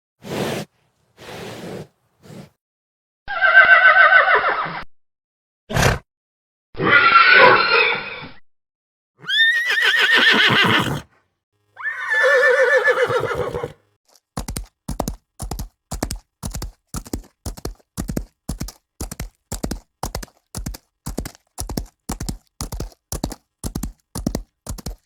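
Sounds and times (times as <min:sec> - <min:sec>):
horse whinnying: 0:03.3 - 0:04.7, 0:09.2 - 0:11.1, 0:11.8 - 0:13.8
horse hooves clip-clopping: 0:12.8 - 0:25.0.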